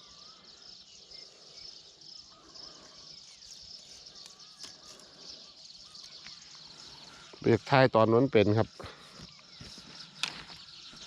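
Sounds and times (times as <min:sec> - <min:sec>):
faint wavering whistled calls: 0:00.0 - 0:11.0
insects chirring: 0:00.0 - 0:11.0.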